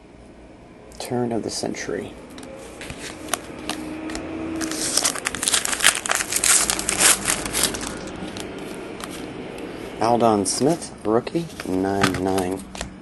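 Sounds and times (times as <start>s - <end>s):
plastic packaging crinkling: 2.8s - 9.3s.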